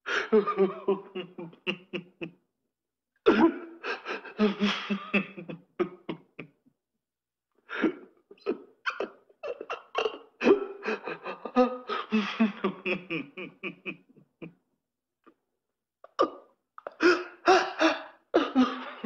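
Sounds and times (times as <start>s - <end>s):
person laughing in choppy bursts: 0.1s - 2.3s, 3.3s - 6.5s, 8.9s - 14.1s.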